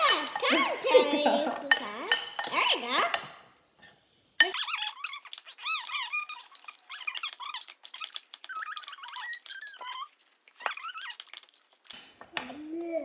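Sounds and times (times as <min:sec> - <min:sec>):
high squeaks: 0:04.4 - 0:11.8
utensil stirring slime: 0:04.4 - 0:12.0.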